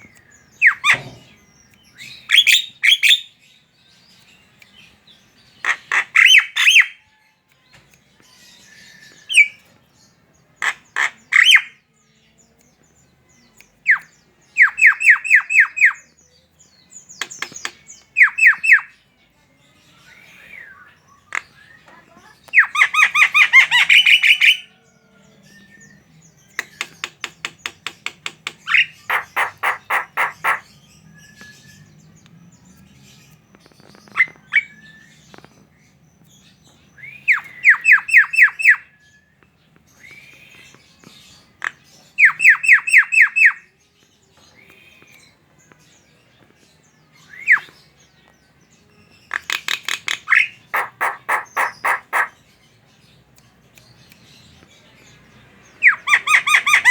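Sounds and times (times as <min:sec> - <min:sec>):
myna chattering: 0:26.6 - 0:30.6, 0:49.4 - 0:52.4.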